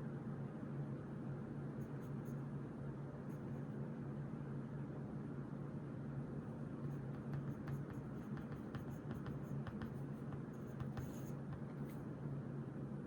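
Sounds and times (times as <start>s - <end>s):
steady low hum: 5.7s - 13.0s
pen scratching on paper: 6.8s - 12.0s.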